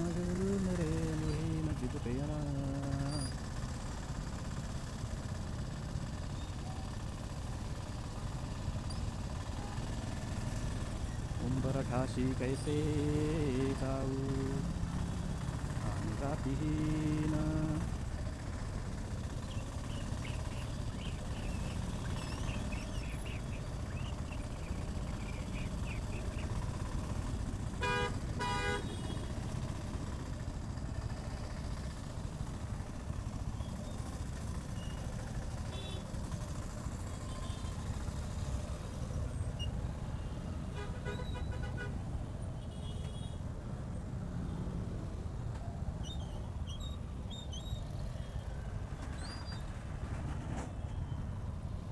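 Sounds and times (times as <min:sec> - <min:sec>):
motorcycle engine rumble: 0:00.0 - 0:42.4
vehicle horns honking: 0:27.8 - 0:29.3, 0:40.7 - 0:42.0.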